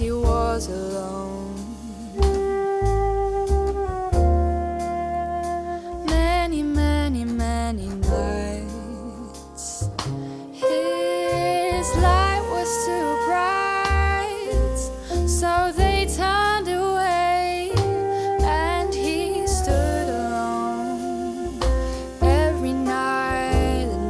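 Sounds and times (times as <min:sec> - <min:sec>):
drums: 0:00.0 - 0:24.0
low bass notes: 0:00.0 - 0:24.0
piano: 0:00.0 - 0:24.0
bending melody line: 0:10.6 - 0:24.0.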